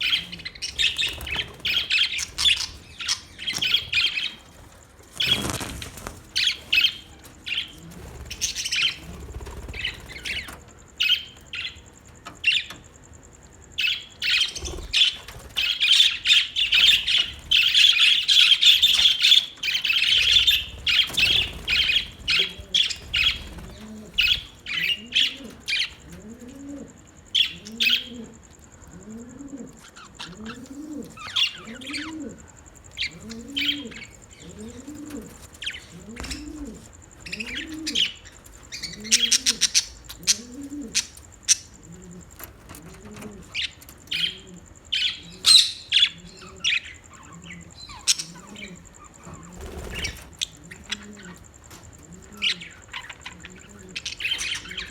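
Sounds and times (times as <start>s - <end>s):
budgerigars chirping and chattering: 0.0s - 12.8s, 13.8s - 26.1s, 32.8s - 54.9s
low cooing call: 21.5s - 38.2s.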